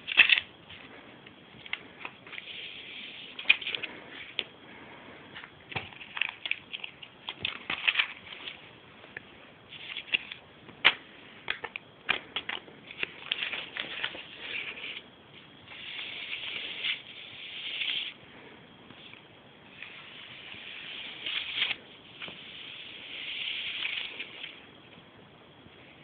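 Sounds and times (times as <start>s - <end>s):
paper crinkling and rustling: 5.7s - 8.6s, 9.7s - 15.0s.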